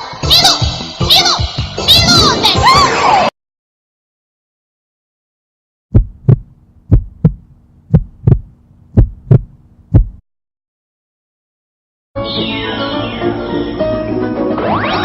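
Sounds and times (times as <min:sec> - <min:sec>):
heartbeat thuds: 0:05.9 - 0:10.2.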